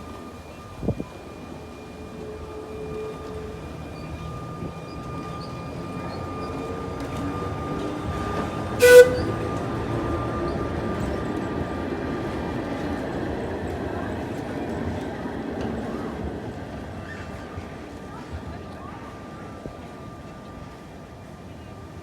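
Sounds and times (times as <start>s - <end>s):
train rumbling: 0.0s - 22.0s
train horn toot: 8.1s - 10.0s.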